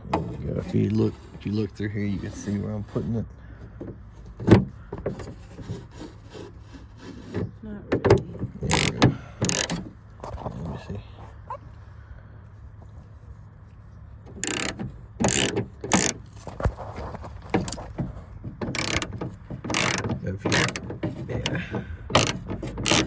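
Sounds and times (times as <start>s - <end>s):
ratchet clicking: 8.7s - 9.9s, 14.3s - 16.2s, 18.6s - 23.0s.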